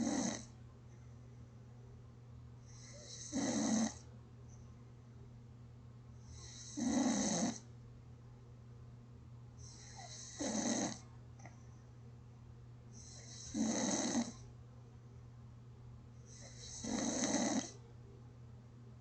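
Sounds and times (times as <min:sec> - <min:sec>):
person snoring: 0:00.0 - 0:00.5, 0:02.8 - 0:04.0, 0:06.3 - 0:07.6, 0:09.6 - 0:11.0, 0:13.0 - 0:14.4, 0:16.3 - 0:17.8
steady low hum: 0:00.0 - 0:19.0.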